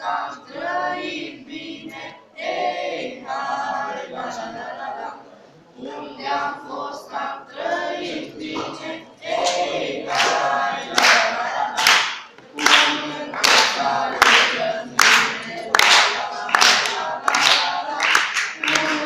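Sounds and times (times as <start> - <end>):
group singing: 0.0 - 19.0
hand claps on a beat: 9.4 - 19.0.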